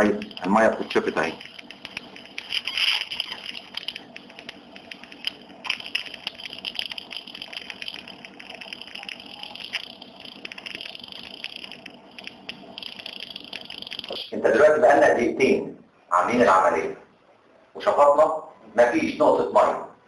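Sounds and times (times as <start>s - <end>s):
suction tube hissing: 0.0s - 14.2s
crackling clicks of sucked liquid: 0.2s - 14.2s.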